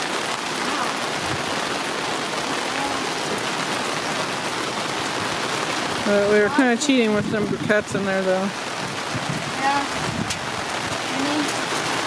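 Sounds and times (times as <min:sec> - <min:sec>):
heavy rain: 0:00.0 - 0:12.0.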